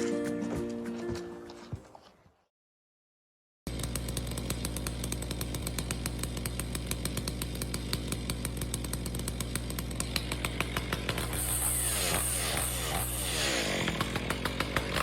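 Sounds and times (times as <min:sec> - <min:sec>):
chainsaw engine idling: 0:03.7 - 0:15.0.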